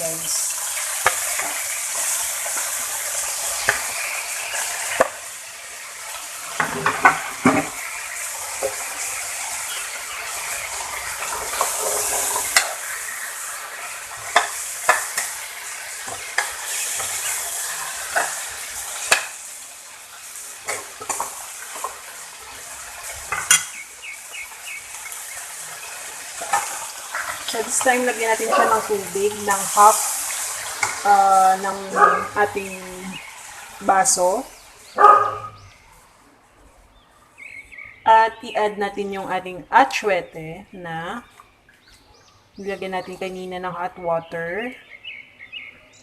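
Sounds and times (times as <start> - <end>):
chicken sizzling in oil: 0.0 - 35.8.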